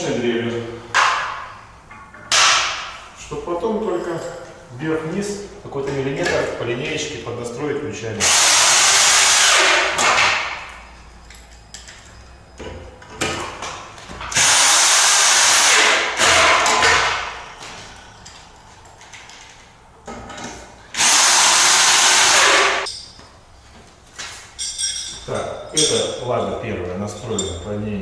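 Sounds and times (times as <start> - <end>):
power drill running in bursts: 8.2 - 10.0, 14.4 - 16.6, 21.0 - 22.8.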